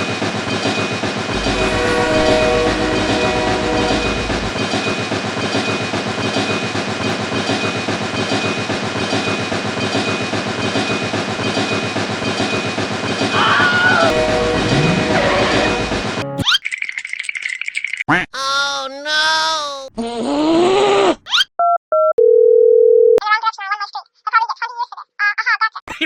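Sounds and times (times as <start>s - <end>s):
steady tones: 1.3s - 7.4s, 14.1s - 16.3s.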